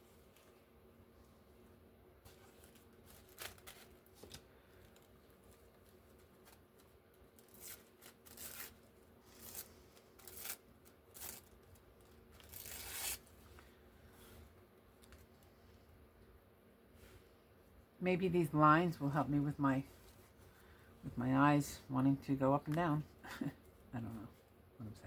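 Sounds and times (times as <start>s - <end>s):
paper tearing: 7.4s - 13.3s.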